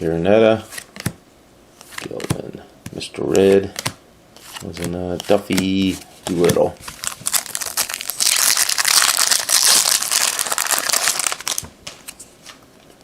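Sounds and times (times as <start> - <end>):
foil wrapper crinkling: 6.8 - 11.7.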